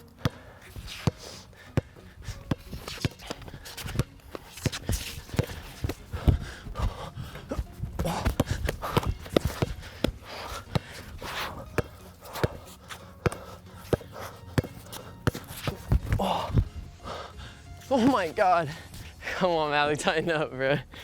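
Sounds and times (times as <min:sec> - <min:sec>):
sneaker footsteps and scuffles: 0:00.0 - 0:16.9
basketball bouncing: 0:01.0 - 0:16.7.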